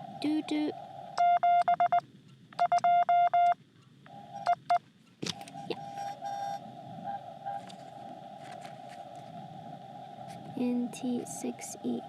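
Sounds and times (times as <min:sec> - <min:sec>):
morse code beeps: 0:01.2 - 0:02.0, 0:02.6 - 0:03.6, 0:04.3 - 0:04.8, 0:05.4 - 0:06.6
radio receiver hiss: 0:04.1 - 0:12.0.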